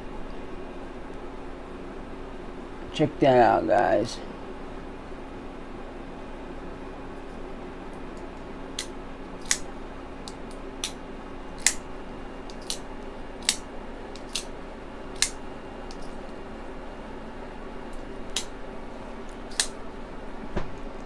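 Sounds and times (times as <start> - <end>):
folding knife lock clicking: 8.0 - 11.0, 11.6 - 14.5, 15.2 - 16.3, 17.9 - 18.6, 19.5 - 19.8.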